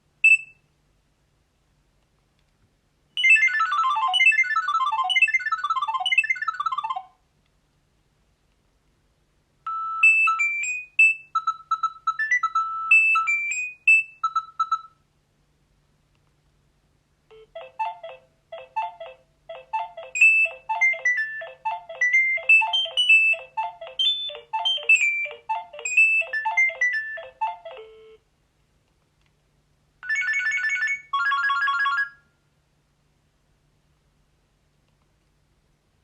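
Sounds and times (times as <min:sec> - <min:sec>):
mobile phone ringtone melody: 0:03.2 - 0:07.1, 0:09.7 - 0:15.0, 0:17.3 - 0:28.2, 0:30.0 - 0:32.3.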